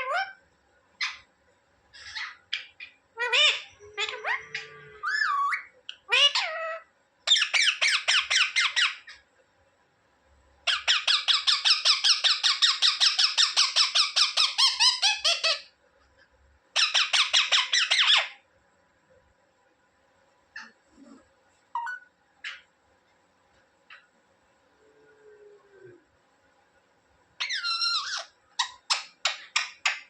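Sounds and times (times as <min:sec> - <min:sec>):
parrot calling: 0:00.0 - 0:00.4, 0:01.0 - 0:01.3, 0:02.0 - 0:09.2, 0:10.6 - 0:15.7, 0:16.7 - 0:18.4, 0:20.6 - 0:22.7, 0:27.4 - 0:30.0
parrot fast squawks: 0:20.6 - 0:22.7.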